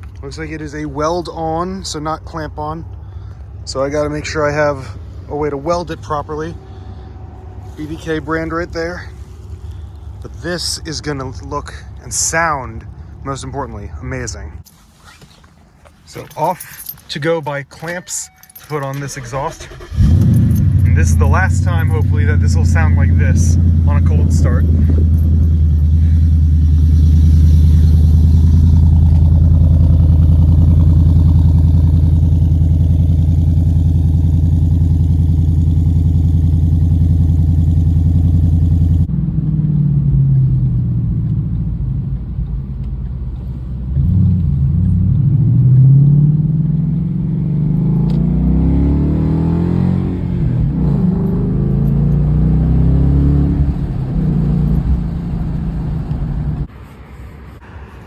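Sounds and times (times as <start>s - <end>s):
car engine idling: 15.4s - 45.5s, 49.2s - 57.6s
car engine revving: 19.0s - 42.6s, 43.9s - 56.7s.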